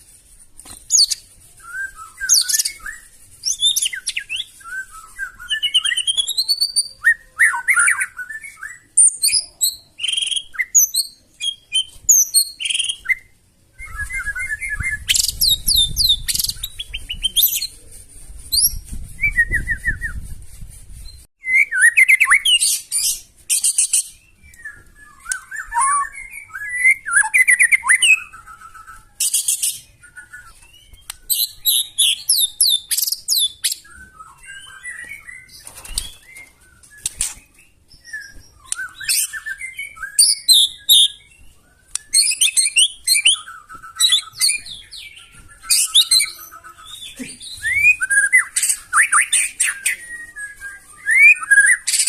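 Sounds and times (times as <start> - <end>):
songbird singing trills: 0.9 - 17.8, 21.4 - 52.0.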